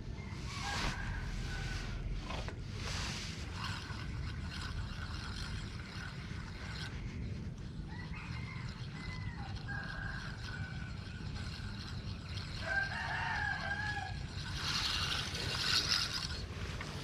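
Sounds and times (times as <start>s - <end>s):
rooster crowing: 0.1s - 2.2s, 7.9s - 11.2s, 11.8s - 16.4s.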